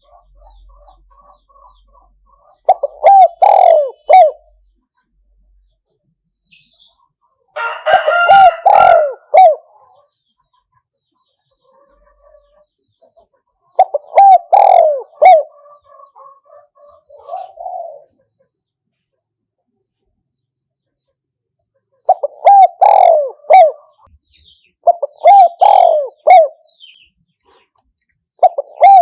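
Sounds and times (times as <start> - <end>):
dove cooing: 2.5 - 4.6, 7.6 - 10.0, 13.7 - 18.2, 22.0 - 24.1, 24.8 - 26.7, 28.4 - 29.0.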